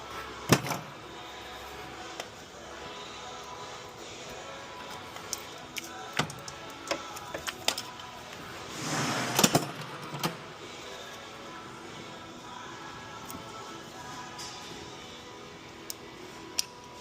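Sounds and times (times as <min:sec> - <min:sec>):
tools and parts clicking: 0:04.9 - 0:08.1, 0:15.8 - 0:17.0.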